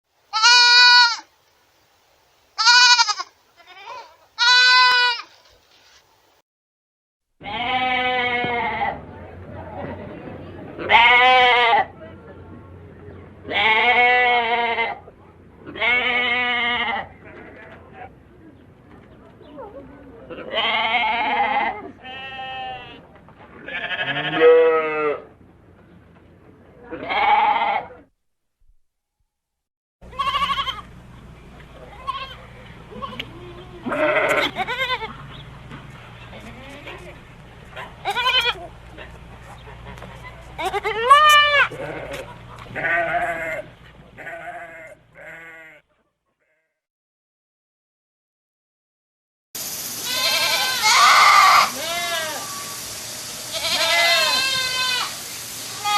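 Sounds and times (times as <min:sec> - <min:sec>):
goats bleating: 0:00.3 - 0:01.3, 0:02.6 - 0:05.4, 0:07.4 - 0:09.0, 0:13.5 - 0:15.0, 0:15.7 - 0:18.1, 0:20.3 - 0:23.0, 0:23.6 - 0:25.3, 0:26.9 - 0:28.0, 0:30.1 - 0:30.9, 0:31.8 - 0:35.3, 0:36.3 - 0:37.2, 0:38.0 - 0:39.1, 0:39.9 - 0:45.8, 0:50.0 - 0:52.6, 0:53.5 - 0:55.2.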